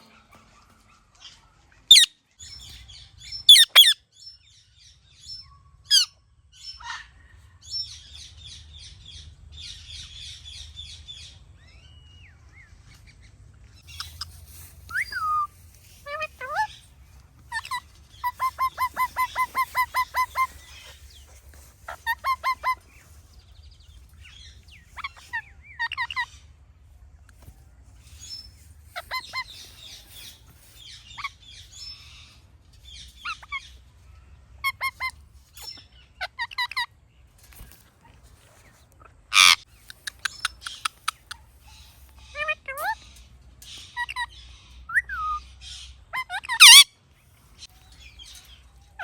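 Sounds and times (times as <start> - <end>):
parrot squawking: 3.5 - 4.0, 17.5 - 20.9, 21.9 - 22.8, 39.3 - 41.4, 46.1 - 46.9.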